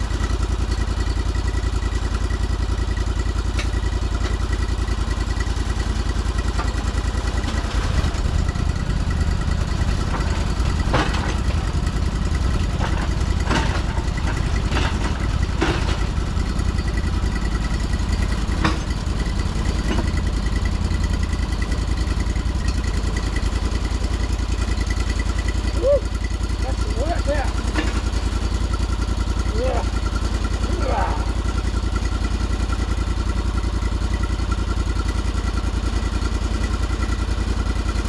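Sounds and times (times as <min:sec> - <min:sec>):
engine running steadily: 0:00.0 - 0:38.0
knocks and clanks: 0:06.5 - 0:20.6, 0:26.7 - 0:28.4.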